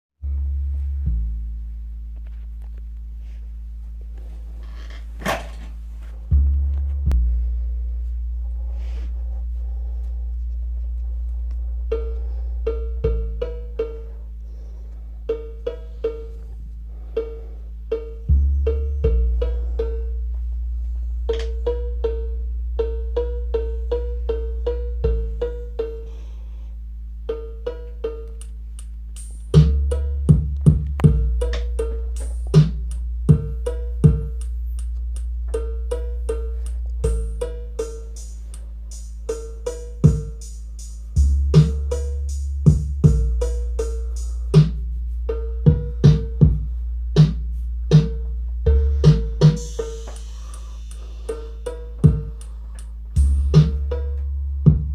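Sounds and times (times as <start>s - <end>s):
held synth bass notes: 0.2s - 54.9s
drum machine cowbell pattern: 11.8s - 26.4s, 27.2s - 54.9s
fast hi-hat pattern: 27.3s - 54.9s
heavy drum hits: 48.8s - 52.4s.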